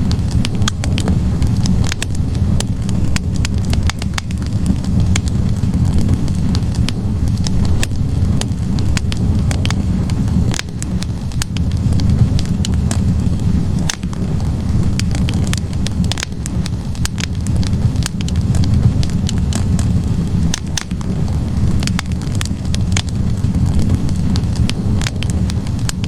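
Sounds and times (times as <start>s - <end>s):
burning wood crackling and popping: 0.0s - 26.0s
low rumble of flames: 0.0s - 26.0s.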